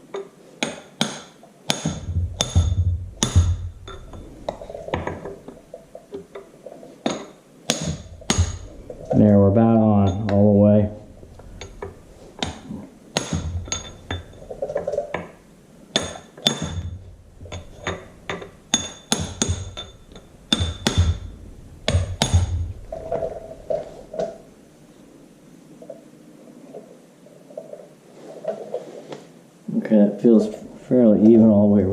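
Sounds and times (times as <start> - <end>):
hammer tapping sheet metal: 0.6 - 4.6, 7.1 - 8.8, 16.0 - 22.8.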